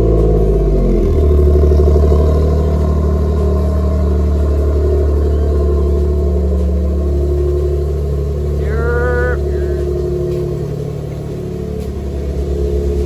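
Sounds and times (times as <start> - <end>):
car engine running: 0.0 - 13.0
brief voice: 8.6 - 10.0.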